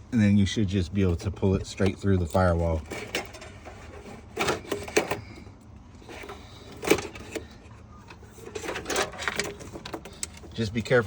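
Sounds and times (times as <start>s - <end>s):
cable scraping and knocking: 1.0s - 5.2s.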